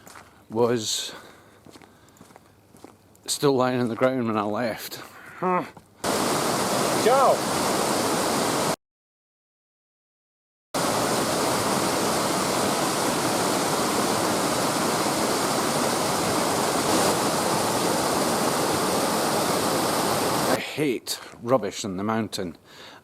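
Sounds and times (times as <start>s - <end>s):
water rushing hiss: 6.0s - 8.8s, 10.8s - 20.8s.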